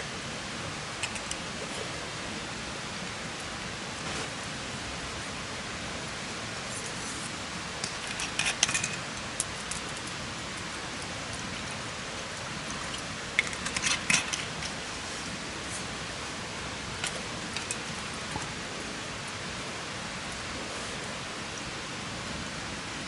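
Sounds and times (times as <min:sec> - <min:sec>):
campfire crackling: 0:06.0 - 0:22.2.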